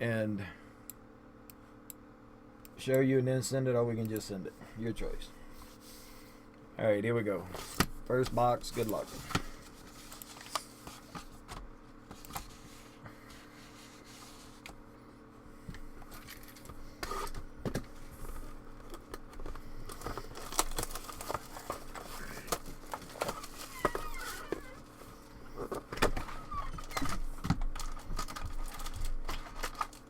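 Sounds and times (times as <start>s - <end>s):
steady low hum: 0.0s - 30.0s
plastic wrap crinkling and tearing: 19.9s - 24.8s, 27.6s - 30.0s.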